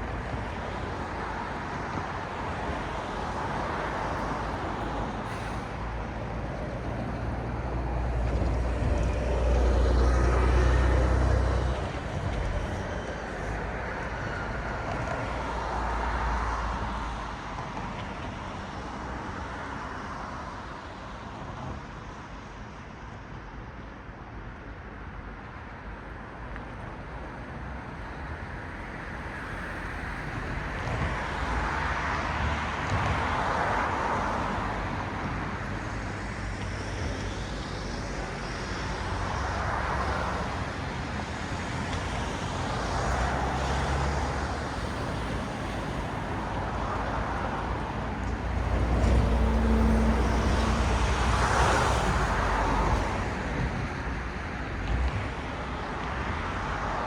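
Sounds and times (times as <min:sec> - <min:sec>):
cars passing: 0:27.6 - 0:57.0.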